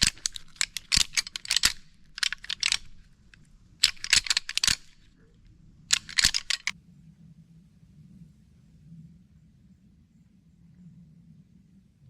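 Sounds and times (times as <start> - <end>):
antlers rattling: 0.0 - 5.2, 5.9 - 6.8.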